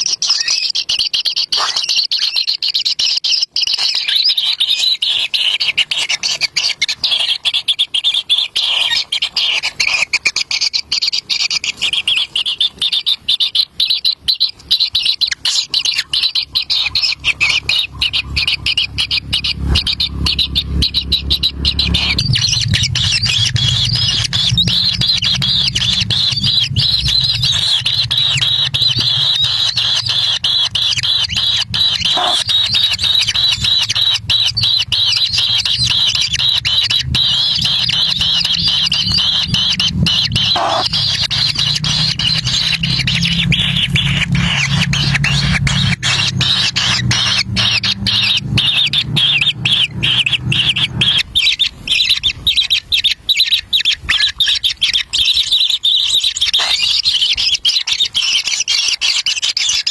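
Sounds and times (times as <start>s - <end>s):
chicks begging calls: 0.0s - 59.9s
low rumble: 17.7s - 51.3s.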